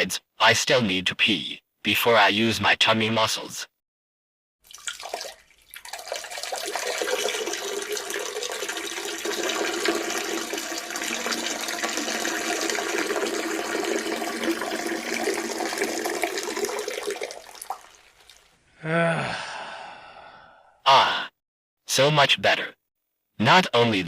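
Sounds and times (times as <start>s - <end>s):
urine stream splashing in toilet: 4.6s - 18.6s.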